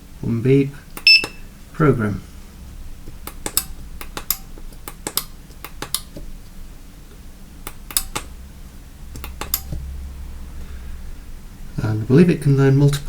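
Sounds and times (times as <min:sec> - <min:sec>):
remote button clicks: 0:01.0 - 0:01.4, 0:09.2 - 0:09.8.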